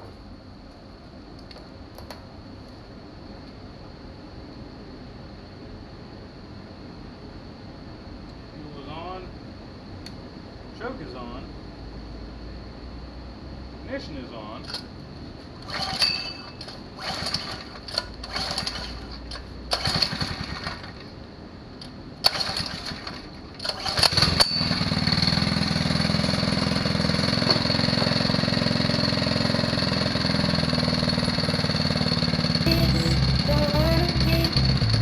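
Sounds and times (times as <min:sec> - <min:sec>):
recoil starter pulls: 0:15.6 - 0:20.9, 0:22.2 - 0:24.5
small engine running: 0:17.0 - 0:21.0, 0:23.9 - 0:35.0.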